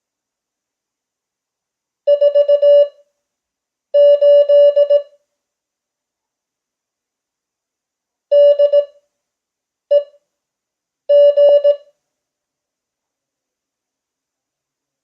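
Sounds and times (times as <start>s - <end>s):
morse code beeping tone: 2.1s - 2.9s, 4.0s - 5.1s, 8.3s - 8.9s, 11.1s - 11.8s.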